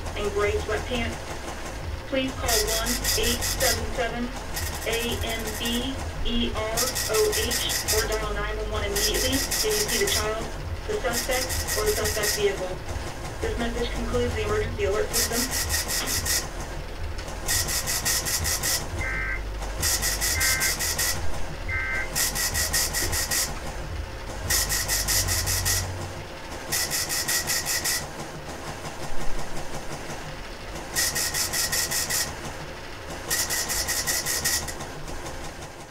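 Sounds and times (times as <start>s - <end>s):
digital data tones: 15.0s - 16.5s, 17.5s - 23.6s, 26.7s - 28.1s, 31.0s - 32.3s.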